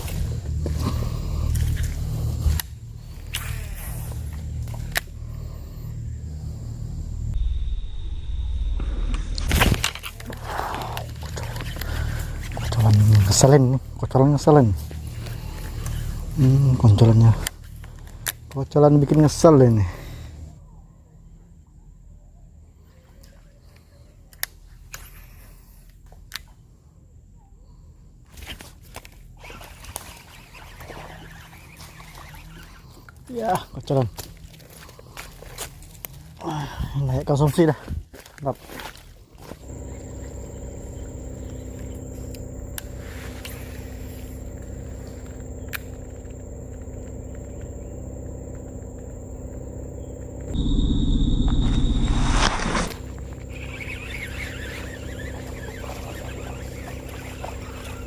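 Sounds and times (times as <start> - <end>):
small engine running: 0.0 - 7.3, 9.8 - 20.5, 29.0 - 35.8, 39.4 - 58.0
low steady rumble: 0.0 - 22.8, 39.5 - 58.0.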